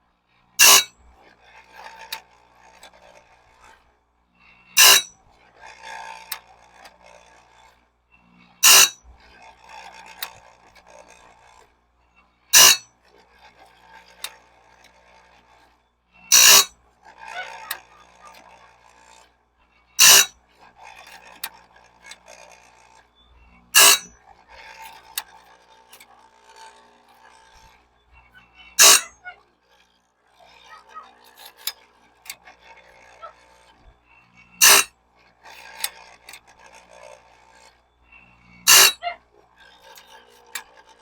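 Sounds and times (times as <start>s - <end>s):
scraping and rubbing: 0.6s - 0.9s, 4.8s - 5.1s, 8.6s - 9.0s, 12.6s - 12.8s, 16.3s - 16.7s, 20.0s - 20.3s, 23.8s - 24.1s, 28.8s - 29.1s, 34.6s - 34.9s, 38.7s - 39.0s
grinding wheel on saw teeth: 0.6s - 1.0s, 4.8s - 7.7s, 8.6s - 9.0s, 12.6s - 12.9s, 16.3s - 19.2s, 20.0s - 27.8s, 28.5s - 29.9s, 30.5s - 41.0s.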